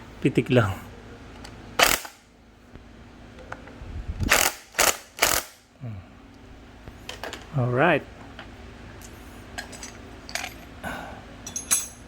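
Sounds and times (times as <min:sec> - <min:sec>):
impact wrench bursts: 0:04.3 - 0:05.6.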